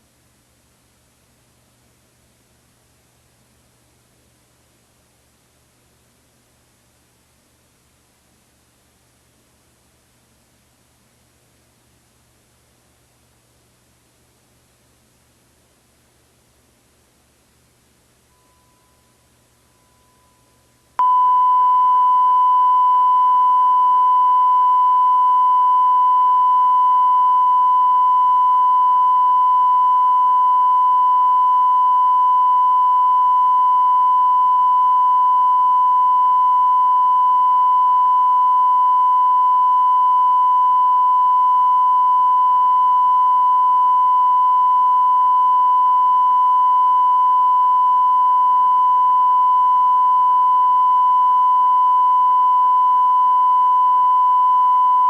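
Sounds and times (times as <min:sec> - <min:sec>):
faint low hum: 0:00.0 - 0:55.0
steady test tone: 0:18.3 - 0:55.0.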